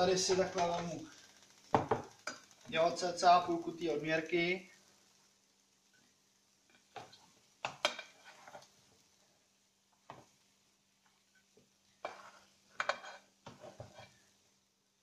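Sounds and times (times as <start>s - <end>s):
kitchen utensils and dishes clattering: 12.0s - 14.2s.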